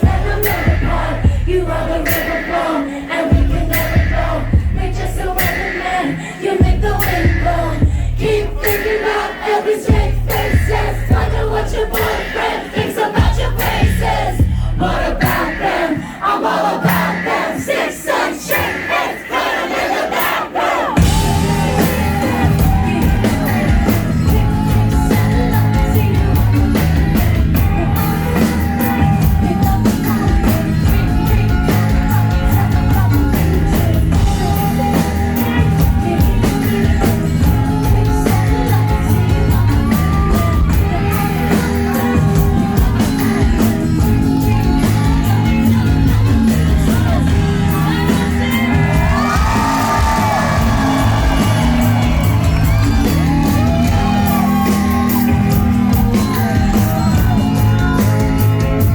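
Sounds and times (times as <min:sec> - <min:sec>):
woman singing: 0:00.0 - 0:19.5, 0:20.6 - 0:58.9
loud live band music: 0:00.0 - 0:58.9
audience yelling: 0:08.5 - 0:25.6, 0:47.8 - 0:58.8.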